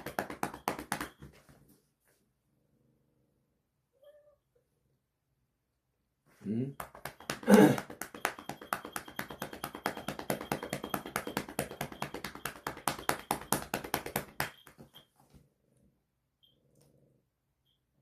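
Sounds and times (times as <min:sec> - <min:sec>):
rapid light taps: 0:00.0 - 0:01.4, 0:06.8 - 0:15.1.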